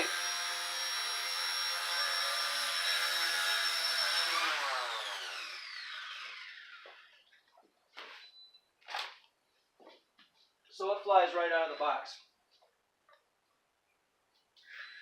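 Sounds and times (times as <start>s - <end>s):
toy helicopter rotors whining: 0.0s - 7.1s.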